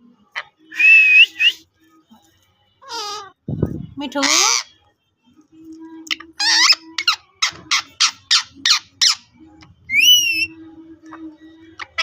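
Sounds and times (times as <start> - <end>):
parrot squawks: 2.8 - 3.4, 4.2 - 4.7, 6.4 - 9.3, 9.9 - 10.5
parrot whistle: 9.9 - 10.5.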